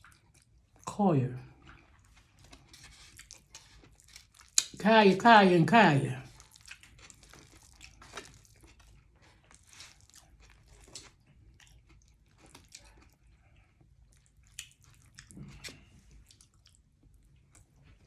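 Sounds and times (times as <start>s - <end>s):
person chewing food: 0.0s - 0.9s, 1.5s - 4.8s, 6.2s - 18.0s
mouth clicks and smacks: 4.5s - 4.8s.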